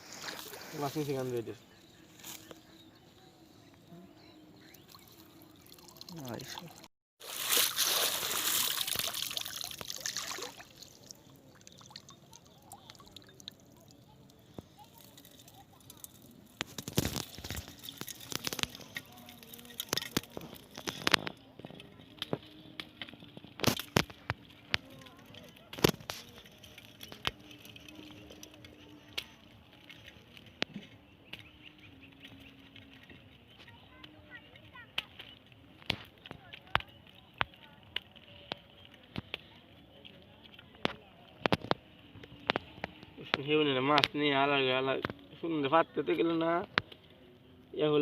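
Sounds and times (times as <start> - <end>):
faint water drips: 4.6 - 20.9
water splashing and pouring: 4.9 - 14.0, 14.8 - 21.2.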